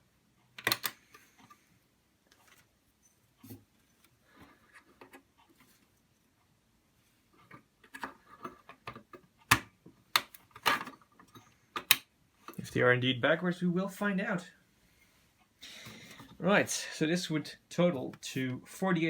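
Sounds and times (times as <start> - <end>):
memory modules clicking into slots: 0.6 - 1.0.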